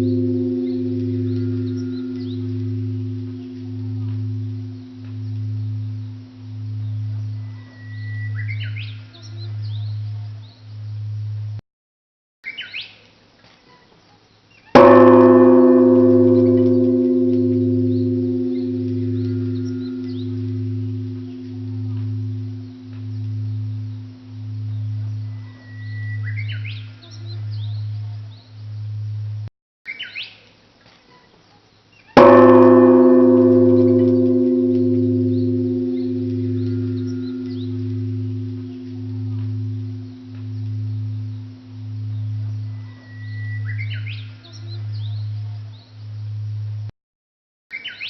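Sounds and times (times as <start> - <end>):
small birds chirping: 0.0 - 11.3, 16.4 - 29.2, 33.8 - 46.2
large bronze bell ringing: 0.0 - 11.6, 14.8 - 29.4, 32.2 - 46.9.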